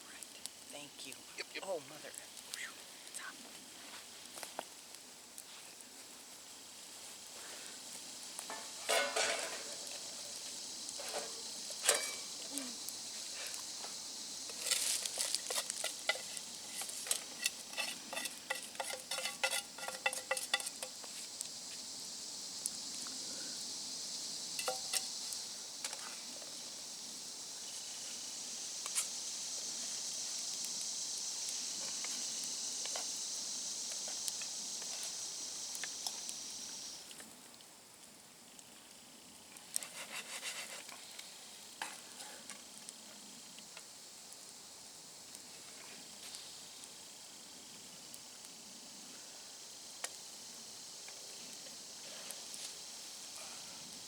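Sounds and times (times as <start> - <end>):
food sizzling in a pan: 0.0 - 54.0
utensil clinking against pan: 16.1 - 20.9, 24.6 - 25.1.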